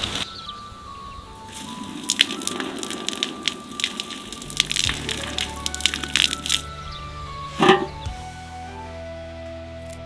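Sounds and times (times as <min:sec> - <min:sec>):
soft background music: 0:00.0 - 0:10.0
crackling clicks: 0:01.6 - 0:06.8.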